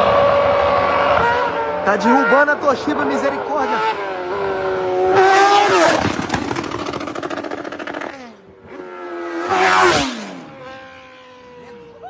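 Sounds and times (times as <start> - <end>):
motorcycle engine revving: 0.0 - 12.0
motorcycle exhaust popping: 5.3 - 8.3.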